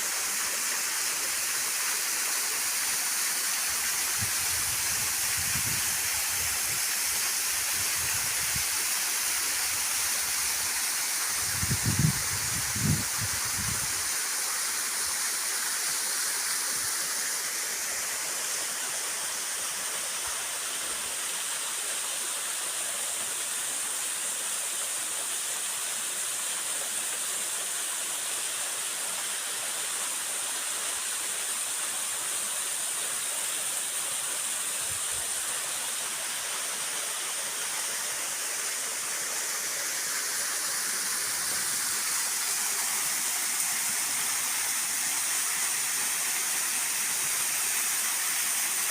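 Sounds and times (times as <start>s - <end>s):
waterfall: 0.0s - 48.9s.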